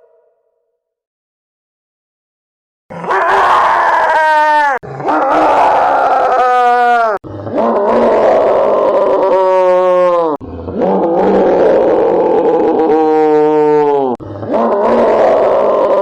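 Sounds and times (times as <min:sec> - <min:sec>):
puppy howling: 0:02.9 - 0:13.6.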